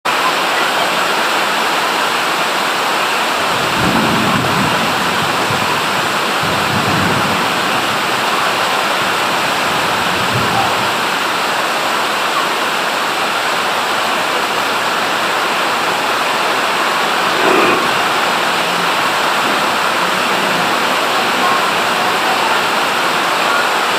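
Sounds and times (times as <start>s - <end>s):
heavy rain falling: 0.1s - 23.9s
low rumbles: 16.2s - 22.8s.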